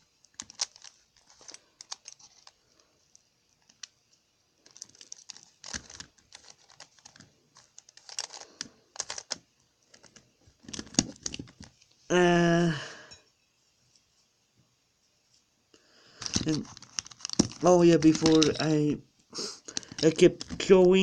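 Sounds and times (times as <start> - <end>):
plastic puzzle cube clicking: 0.3 - 2.6, 4.6 - 11.7, 16.2 - 18.8.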